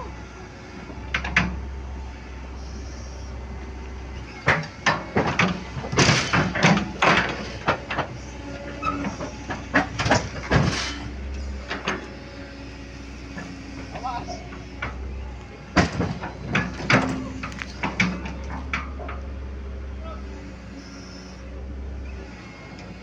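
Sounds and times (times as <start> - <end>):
diesel engine running: 0.0 - 23.0
steel tracks clanking: 4.2 - 19.2.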